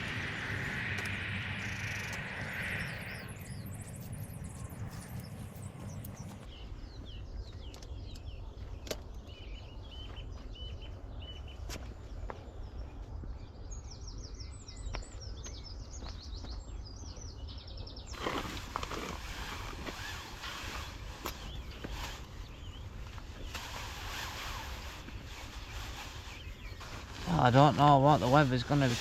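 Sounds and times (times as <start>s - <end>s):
steady low rumble: 0.0s - 24.0s
small birds chirping: 0.0s - 29.0s
loud rustling: 18.1s - 29.0s.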